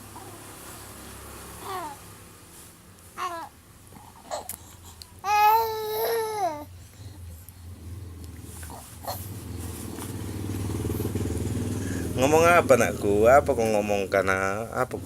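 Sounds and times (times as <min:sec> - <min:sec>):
baby cooing: 0:01.6 - 0:02.0, 0:03.2 - 0:04.6, 0:05.2 - 0:06.7.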